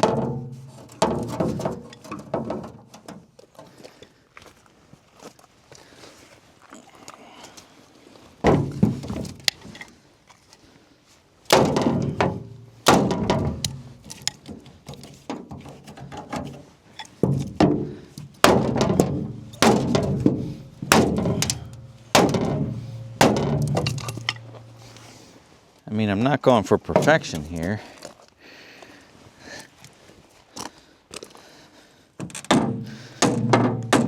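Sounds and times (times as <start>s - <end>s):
hammer striking metal frame: 0.0s - 1.9s, 11.5s - 14.5s, 17.2s - 25.0s, 32.4s - 34.0s.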